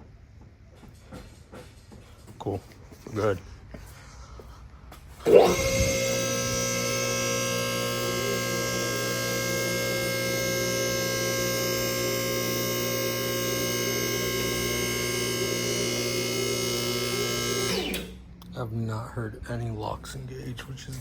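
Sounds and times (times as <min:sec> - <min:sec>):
hydraulic pump motor humming: 0:05.2 - 0:18.5.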